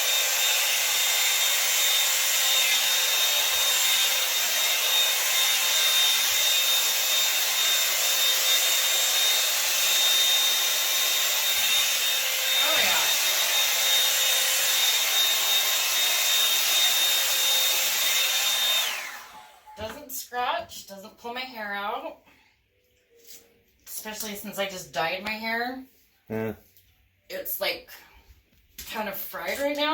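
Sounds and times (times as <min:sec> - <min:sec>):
hair dryer blowing air: 0:00.0 - 0:19.9.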